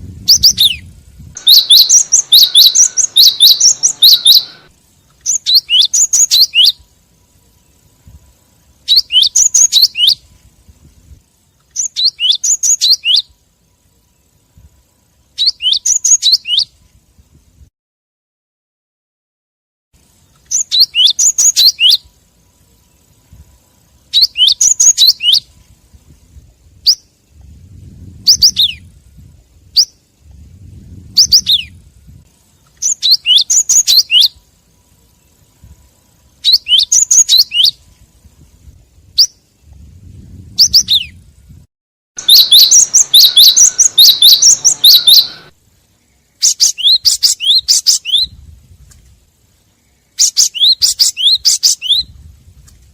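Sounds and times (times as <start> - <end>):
bird chirping: 0.1 - 10.4, 11.2 - 16.8, 20.0 - 25.7, 26.8 - 27.4, 28.0 - 28.9, 29.7 - 31.8, 32.4 - 37.9, 39.1 - 39.9, 40.5 - 41.2, 42.2 - 48.4, 49.5 - 52.2.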